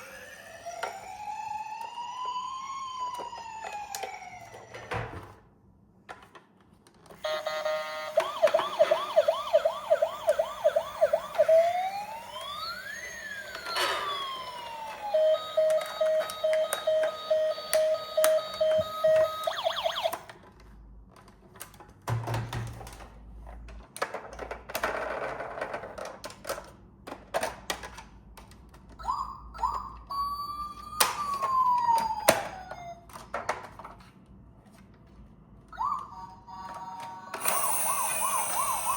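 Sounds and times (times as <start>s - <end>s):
toy electronic siren: 0.0s - 4.9s, 7.2s - 20.3s, 29.0s - 33.2s, 35.7s - 38.9s
rapid steady beeping: 37.4s - 38.9s.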